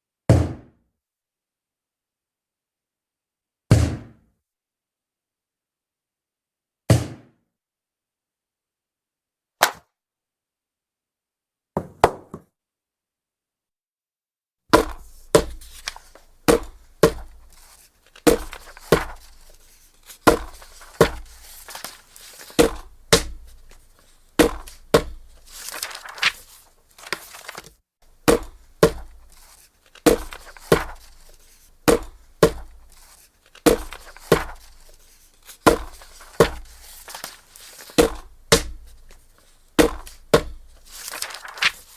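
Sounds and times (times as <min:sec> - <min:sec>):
rubber stamp striking paper: 0:14.7 - 0:41.9.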